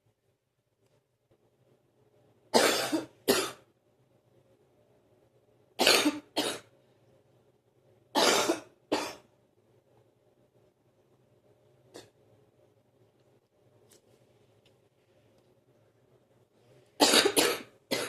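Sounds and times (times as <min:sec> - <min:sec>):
person coughing: 0:02.6 - 0:03.7, 0:05.8 - 0:06.7, 0:08.2 - 0:09.3, 0:17.0 - 0:18.0.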